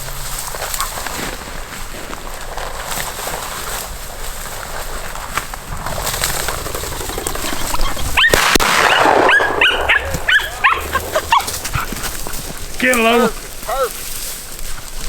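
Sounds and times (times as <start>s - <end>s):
sharp crack: 5.6s - 13.1s
dogs yipping and whining: 6.8s - 12.8s.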